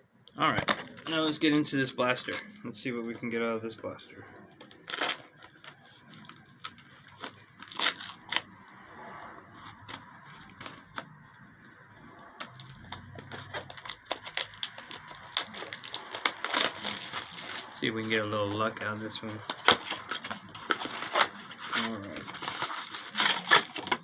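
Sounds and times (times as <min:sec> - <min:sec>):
plastic and cardboard tearing: 0:00.5 - 0:01.4, 0:04.5 - 0:08.5, 0:09.7 - 0:24.0.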